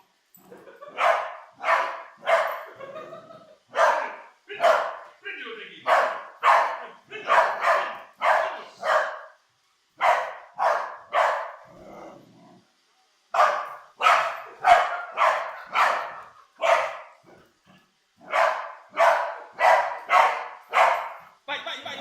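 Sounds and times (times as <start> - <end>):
dog barking: 0.9 - 2.8, 3.7 - 5.1, 5.8 - 9.4, 10.0 - 11.6, 13.4 - 17.3, 18.2 - 21.4
dog growling: 2.8 - 4.2, 11.3 - 12.8, 15.5 - 18.4.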